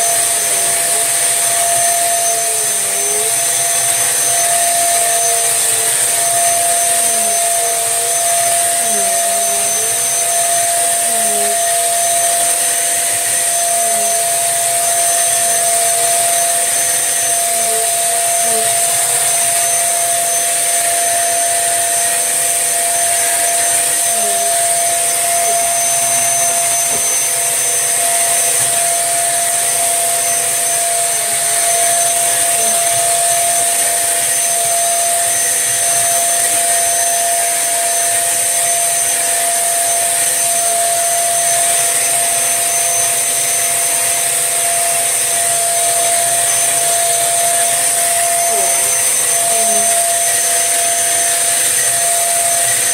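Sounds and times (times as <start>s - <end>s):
vacuum cleaner running: 0.0s - 52.9s.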